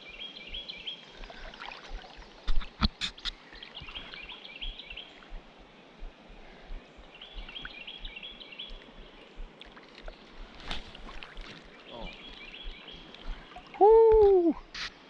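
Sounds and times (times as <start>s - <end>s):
songbird chirping: 0.0s - 14.7s
creek water running: 0.0s - 15.0s
person wading and splashing: 1.1s - 6.5s, 8.7s - 14.7s.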